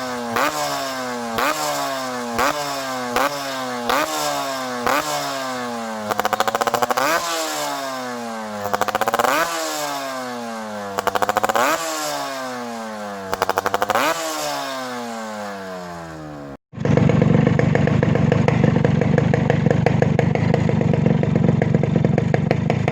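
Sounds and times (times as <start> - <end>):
motorcycle engine revving: 0.0 - 22.9
exhaust pops crackling: 6.1 - 7.2, 11.0 - 11.8, 13.3 - 14.2.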